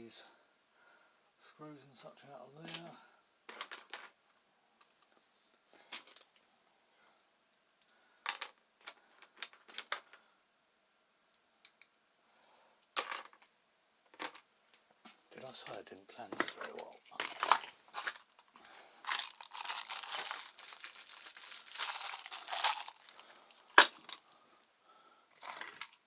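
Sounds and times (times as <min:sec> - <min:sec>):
small metal parts clinking: 0:16.5 - 0:24.3.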